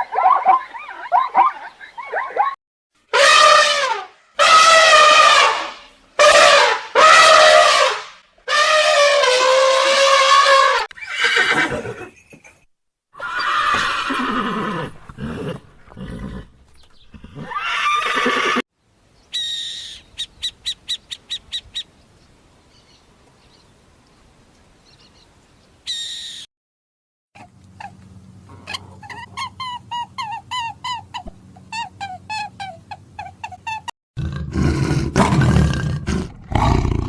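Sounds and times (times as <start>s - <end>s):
horse whinnying: 10.2s - 12.6s, 13.2s - 16.5s, 17.2s - 18.6s, 34.2s - 36.3s.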